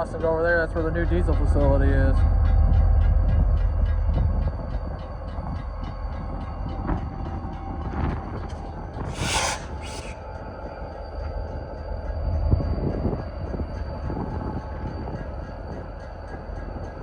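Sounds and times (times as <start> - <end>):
diesel locomotive engine rumble: 0.0 - 17.0
short air hisses: 9.1 - 10.2.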